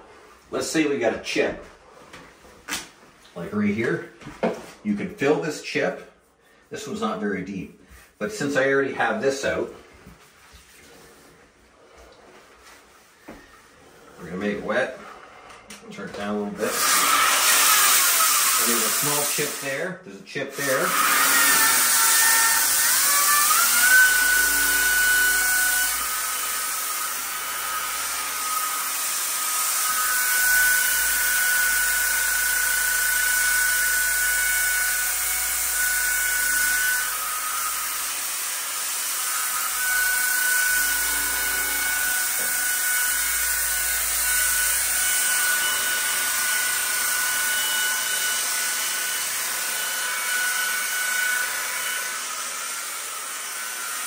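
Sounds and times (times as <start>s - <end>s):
sander motor whine: 20.9s - 29.0s, 39.5s - 52.1s.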